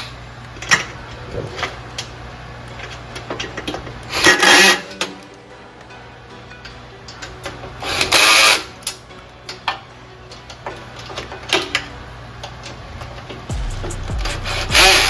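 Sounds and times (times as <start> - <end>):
steady low hum: 11.8 - 15.0
loud harsh burst: 13.5 - 15.0.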